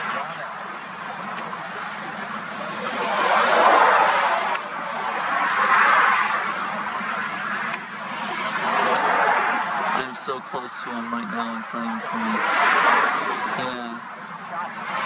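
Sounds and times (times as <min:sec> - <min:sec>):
vehicles passing on road: 0:00.0 - 0:15.0.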